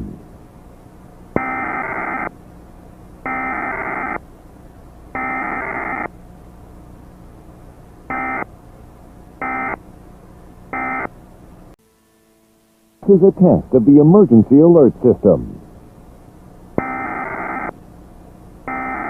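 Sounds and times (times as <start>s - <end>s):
low hum and hiss: 0.0s - 19.0s
buzzy digital data bursts: 1.4s - 2.3s, 3.2s - 4.2s, 5.2s - 6.1s, 8.1s - 8.5s, 9.4s - 9.8s, 10.7s - 11.1s, 16.8s - 17.8s, 18.6s - 19.0s.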